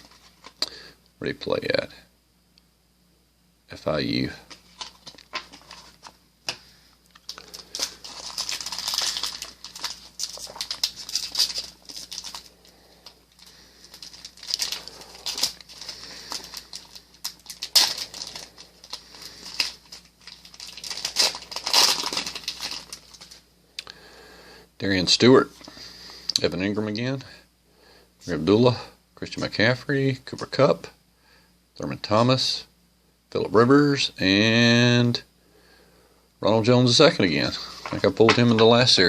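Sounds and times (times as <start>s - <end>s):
plastic wrapper crinkling and tearing: 4.5s - 6.1s, 7.1s - 23.4s.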